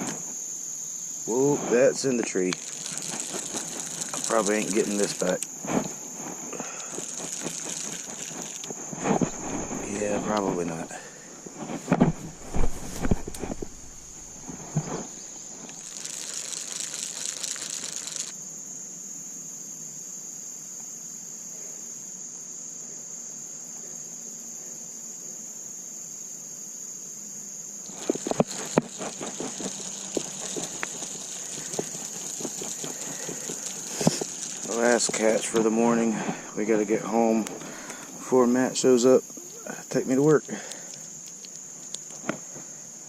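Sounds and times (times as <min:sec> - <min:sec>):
insects chirping: 0:00.0 - 0:43.0
short rustle: 0:01.3 - 0:18.3, 0:27.9 - 0:38.3.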